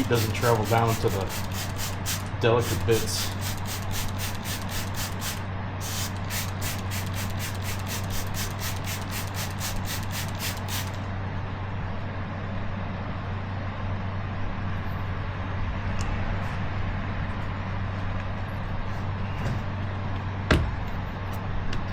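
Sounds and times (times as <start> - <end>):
quick scratching: 0.0 - 5.4
gas torch hissing: 0.0 - 11.0.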